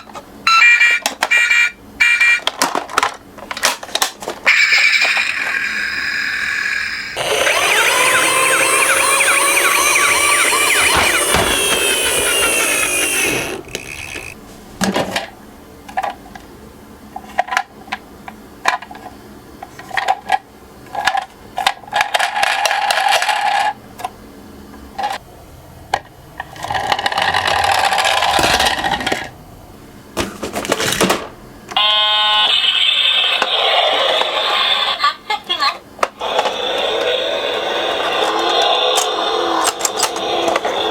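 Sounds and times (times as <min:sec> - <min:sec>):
toy cars rolling and clattering: 0:02.2 - 0:05.8, 0:07.1 - 0:14.4, 0:18.6 - 0:24.1, 0:25.9 - 0:29.3, 0:36.0 - 0:40.9
siren: 0:04.5 - 0:13.6, 0:31.8 - 0:33.2.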